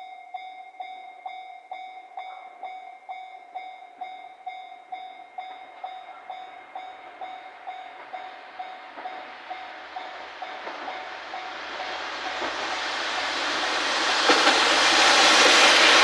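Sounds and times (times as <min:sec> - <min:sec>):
level crossing warning bell: 0:00.0 - 0:14.4
diesel railcar running: 0:04.3 - 0:16.0.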